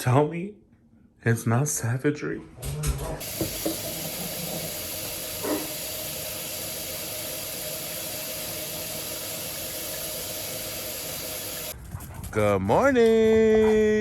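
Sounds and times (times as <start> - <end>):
tap water running into sink: 3.2 - 11.8.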